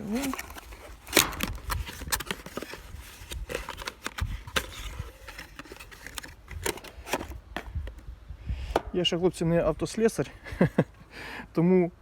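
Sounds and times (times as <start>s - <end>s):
packaging clicks and crinkles: 0.0s - 7.4s.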